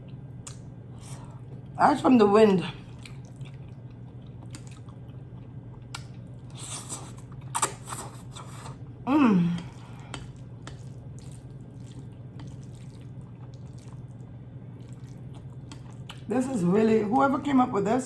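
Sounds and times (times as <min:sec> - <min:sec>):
chewing with mouth clicks: 0:00.0 - 0:01.7, 0:02.8 - 0:09.0, 0:09.6 - 0:16.3
steady low hum: 0:00.0 - 0:18.0
noodle slurping: 0:06.4 - 0:08.8, 0:09.6 - 0:14.2
person humming: 0:09.1 - 0:09.8.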